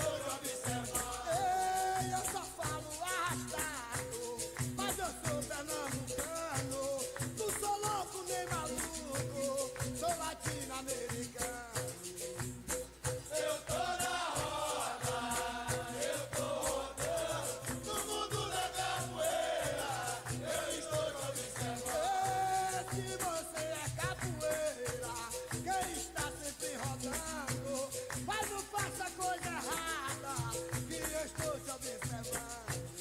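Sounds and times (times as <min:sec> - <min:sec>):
berimbau: 0:00.0 - 0:33.0
steady percussion beat: 0:00.0 - 0:33.0
chorus of voices answering: 0:13.3 - 0:22.7.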